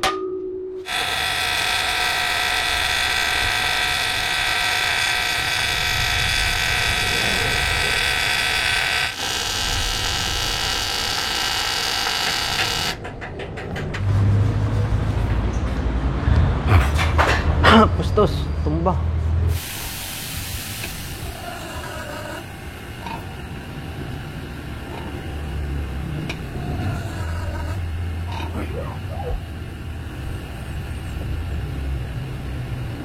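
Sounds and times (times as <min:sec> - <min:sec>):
welding arc buzzing and hissing: 0:00.8 - 0:13.0, 0:19.5 - 0:33.0.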